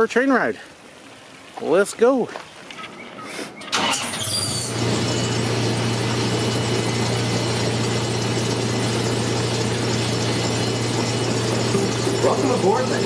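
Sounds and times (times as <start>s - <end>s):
high falling squeal: 3.0s - 12.8s
train engine droning: 3.7s - 13.0s.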